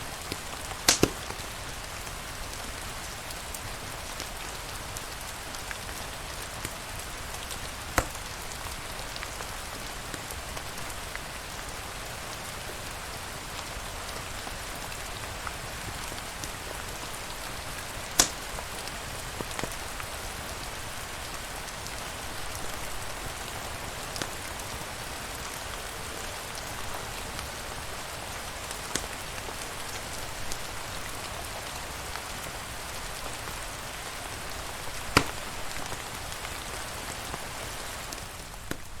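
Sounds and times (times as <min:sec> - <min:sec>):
steady rain hiss: 0:00.0 - 0:39.0
sharp cracks or pops: 0:00.9 - 0:01.4, 0:08.0 - 0:08.2, 0:18.1 - 0:18.6, 0:35.1 - 0:36.0.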